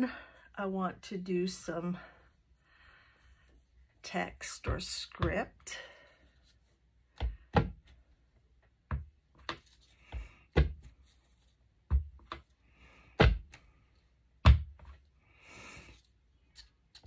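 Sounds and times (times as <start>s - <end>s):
soft rustling: 10.8s - 11.8s.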